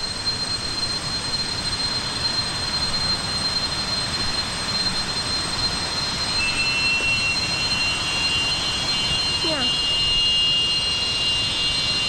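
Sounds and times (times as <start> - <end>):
high-pitched drone: 6.1 - 12.0.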